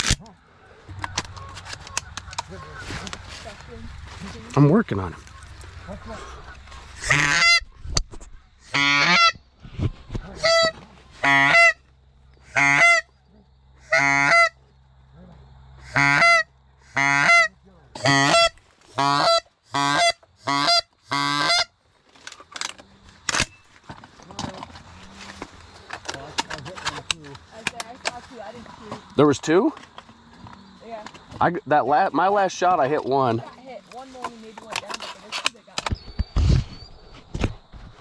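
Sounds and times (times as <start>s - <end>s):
goose call honks: 5.2s - 7.7s, 8.6s - 9.4s, 10.2s - 11.8s, 12.4s - 13.1s, 13.8s - 14.6s, 15.8s - 21.7s.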